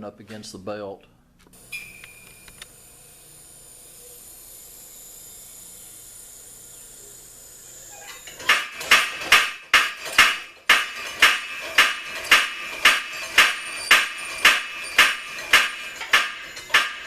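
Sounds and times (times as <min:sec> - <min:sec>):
power hammer striking metal: 0:08.2 - 0:17.0.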